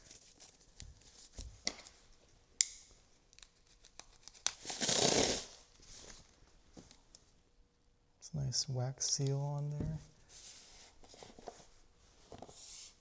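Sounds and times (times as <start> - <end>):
paper wrapping tearing: 3.6 - 5.6.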